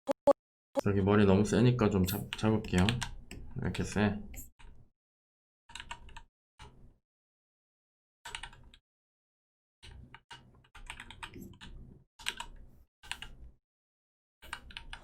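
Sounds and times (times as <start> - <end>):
computer keyboard typing: 5.8 - 6.3.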